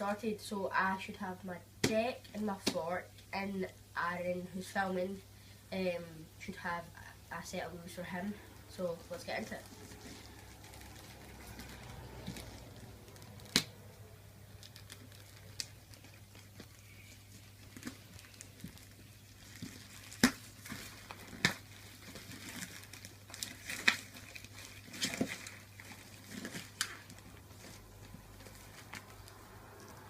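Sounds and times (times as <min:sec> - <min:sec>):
cardboard and tape tearing: 0:09.3 - 0:13.9, 0:14.5 - 0:30.0.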